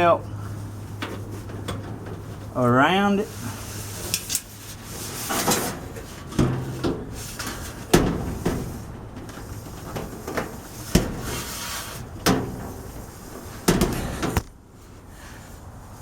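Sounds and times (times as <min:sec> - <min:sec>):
clunks and knocks inside dryer: 0:06.3 - 0:07.1, 0:07.8 - 0:11.4, 0:12.2 - 0:14.5.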